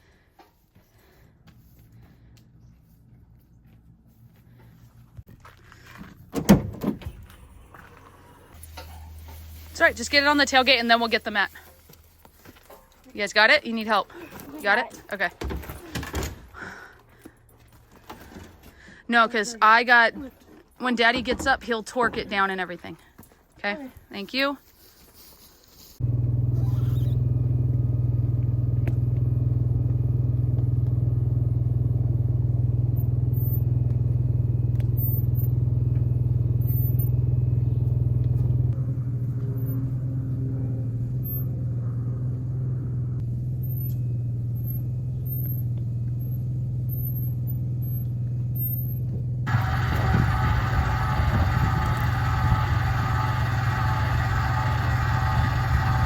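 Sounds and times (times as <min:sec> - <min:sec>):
truck engine droning: 0:26.0 - 0:56.0.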